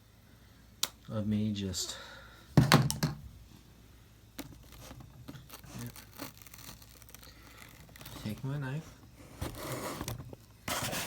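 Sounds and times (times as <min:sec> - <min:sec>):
rustling: 0:04.4 - 0:11.0.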